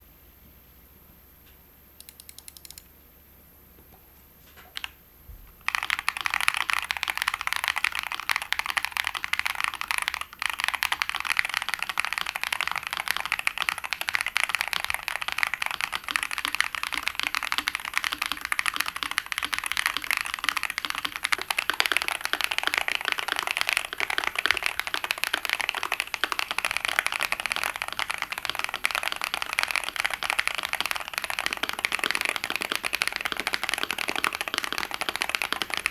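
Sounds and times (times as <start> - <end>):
fast typing on mechanical keyboard: 2.0 - 2.8, 5.6 - 35.9.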